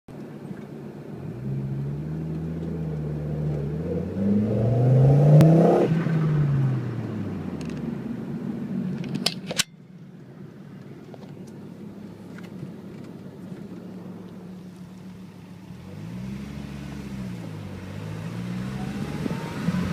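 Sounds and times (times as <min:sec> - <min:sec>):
car engine revving: 0:01.1 - 0:07.8, 0:14.0 - 0:19.9.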